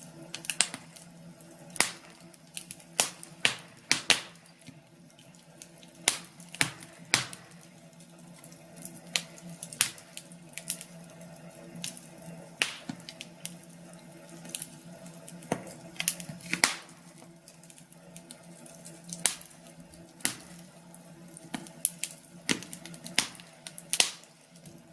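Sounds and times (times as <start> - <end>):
faint steady hum: 0.0 - 24.9
fire crackling: 0.0 - 24.9.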